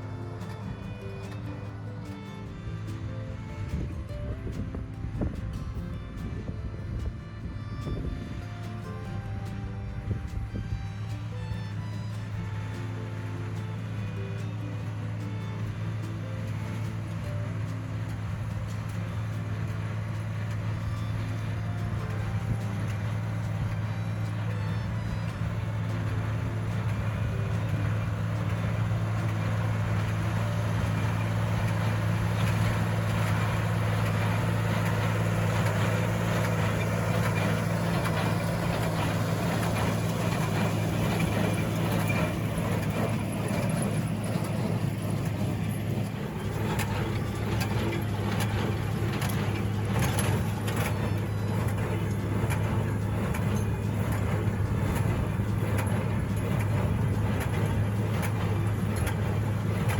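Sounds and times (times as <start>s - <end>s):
tractor engine running: 0.0s - 59.9s
clicks and rattles: 13.5s - 59.9s.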